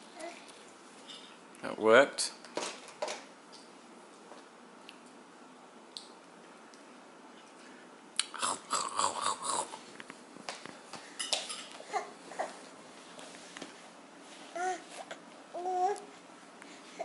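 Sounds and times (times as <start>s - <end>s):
baby babbling: 14.5s - 14.9s, 15.5s - 16.1s.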